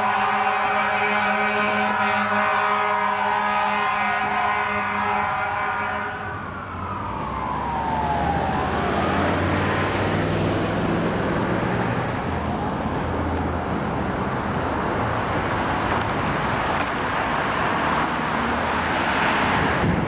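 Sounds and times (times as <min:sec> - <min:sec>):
steady horn tones chord: 0:00.0 - 0:06.3
truck engine and road noise: 0:00.0 - 0:20.0
siren winding down: 0:05.2 - 0:10.4.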